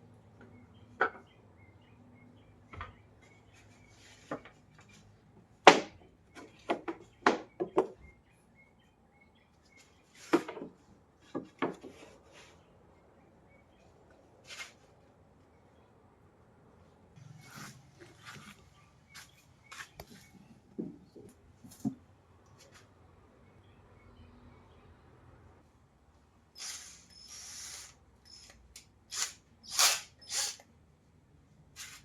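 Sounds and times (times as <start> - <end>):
wooden knocks and clatters: 20.7 - 22.1.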